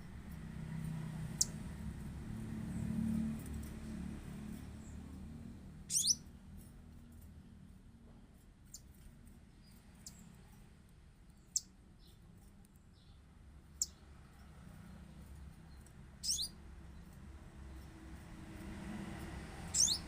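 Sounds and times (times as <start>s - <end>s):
songbird chirping: 0.0s - 1.8s, 5.8s - 6.3s, 11.3s - 20.0s.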